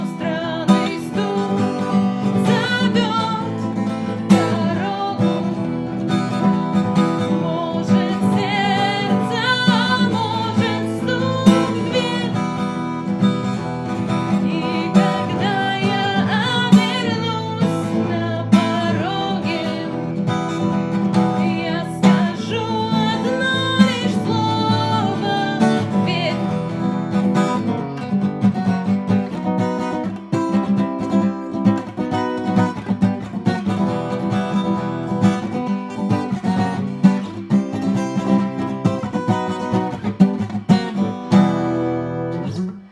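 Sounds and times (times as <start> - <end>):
person singing: 0.0 - 27.0
acoustic guitar strumming: 0.0 - 42.9.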